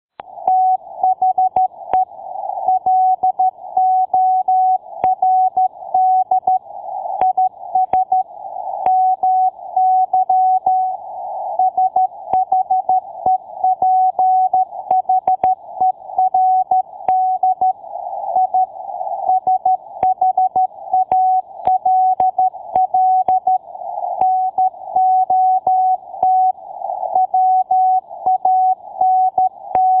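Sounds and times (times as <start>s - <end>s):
morse code beeps: 2.7s - 6.6s, 8.9s - 11.0s, 11.6s - 17.8s, 19.3s - 23.6s, 27.1s - 30.0s.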